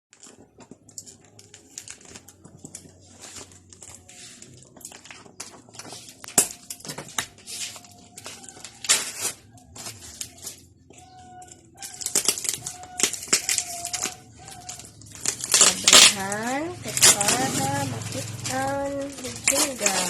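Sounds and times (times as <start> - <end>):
packaging crinkling and tearing: 0.1 - 20.0
loud packaging rips: 3.4 - 10.6, 11.8 - 20.0.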